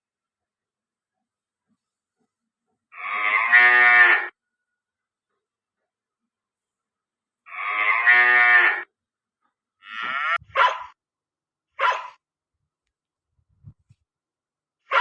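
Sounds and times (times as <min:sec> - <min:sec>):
cow mooing: 0:09.8 - 0:10.4
dog barking: 0:10.5 - 0:11.0, 0:11.8 - 0:12.2.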